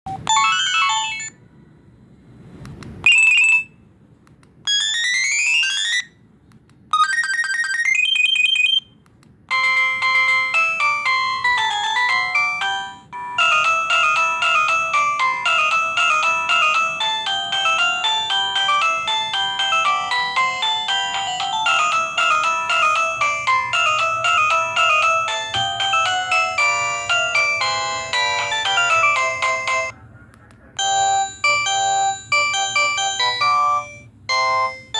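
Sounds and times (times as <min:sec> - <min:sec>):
ringtone melody: 0:00.1 - 0:01.4, 0:03.0 - 0:03.9, 0:04.7 - 0:06.2, 0:06.9 - 0:29.9, 0:30.8 - 0:34.9
phone ringtone jingles: 0:09.5 - 0:29.9, 0:30.8 - 0:34.9.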